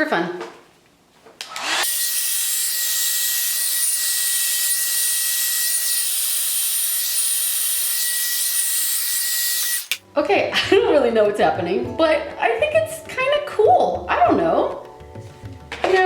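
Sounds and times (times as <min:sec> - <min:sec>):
hair dryer blowing: 0:01.4 - 0:01.9.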